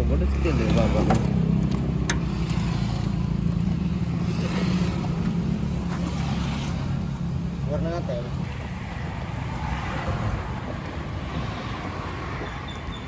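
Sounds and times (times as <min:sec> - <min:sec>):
diesel engine idling: 0:00.0 - 0:09.4.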